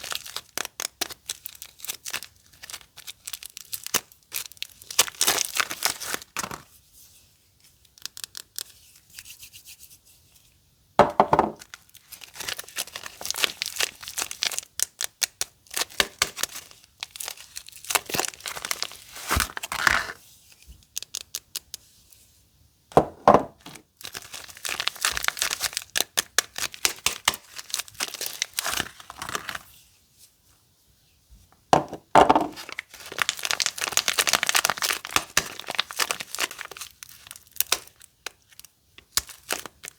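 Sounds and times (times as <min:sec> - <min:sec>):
soap wrappers crinkling: 0:00.0 - 0:06.7, 0:07.6 - 0:09.2, 0:11.4 - 0:20.2, 0:23.6 - 0:29.7, 0:32.3 - 0:39.9.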